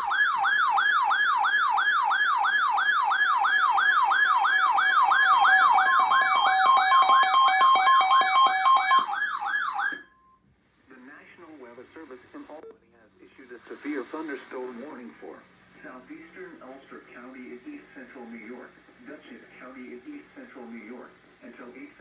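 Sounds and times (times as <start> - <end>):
siren-like sweeping alert tone: 0.0 - 10.2
steady alarm tone: 0.0 - 10.4.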